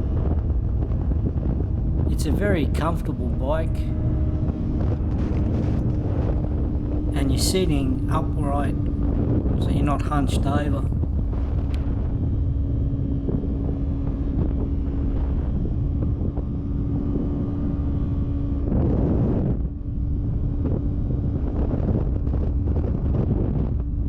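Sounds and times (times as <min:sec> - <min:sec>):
wind rumble on microphone: 0:00.0 - 0:24.0
motorcycle engine cruising: 0:00.8 - 0:11.8
rush of noise passing: 0:00.8 - 0:11.8.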